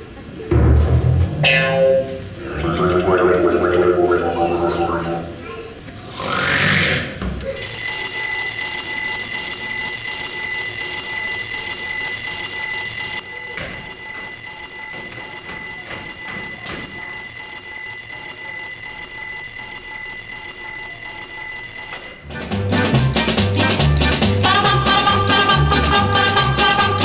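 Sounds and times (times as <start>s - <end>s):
alarm ringing high-pitched: 7.6s - 22.3s.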